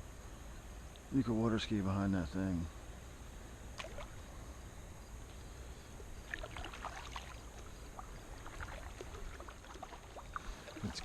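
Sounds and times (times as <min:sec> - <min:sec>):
small splashes and drips: 0:03.8 - 0:04.2, 0:06.2 - 0:11.0
water lapping against kayak hull: 0:06.2 - 0:11.0.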